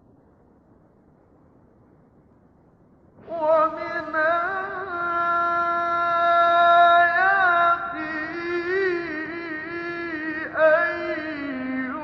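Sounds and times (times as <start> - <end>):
man reciting melodically: 3.2 - 12.0.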